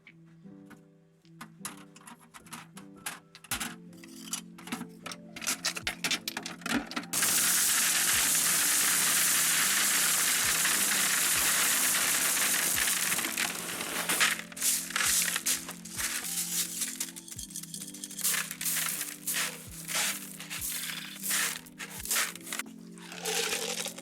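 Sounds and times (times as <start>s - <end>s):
background music: 0.0s - 24.0s
stones clinking and clattering: 1.6s - 24.0s
gravel pouring: 7.1s - 24.0s.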